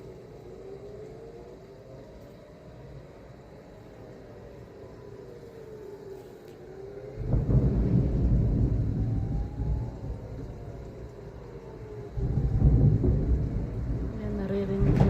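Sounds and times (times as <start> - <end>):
air-raid siren wailing: 0.0 - 15.0
explosion boom and rumble: 7.2 - 11.4, 12.0 - 15.0.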